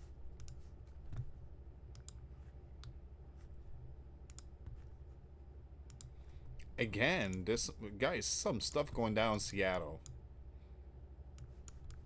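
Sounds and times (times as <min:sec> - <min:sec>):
low steady hum: 0:00.0 - 0:12.0
faint computer input clicks: 0:05.9 - 0:06.2.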